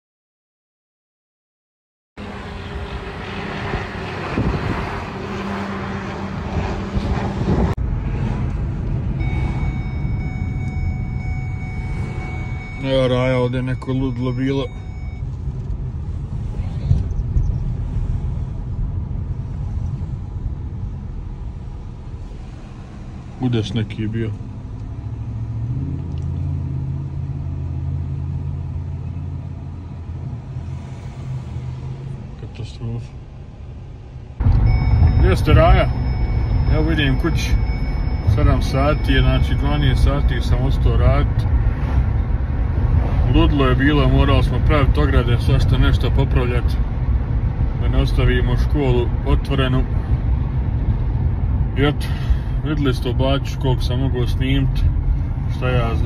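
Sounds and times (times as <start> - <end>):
car road and engine rumble: 2.2 - 56.0
faint high tones: 9.2 - 15.2.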